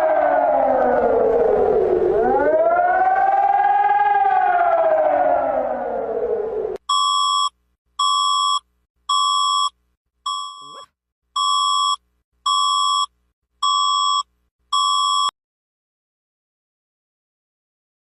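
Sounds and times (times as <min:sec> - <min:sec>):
electronic alert beeps: 0:10.3 - 0:13.1.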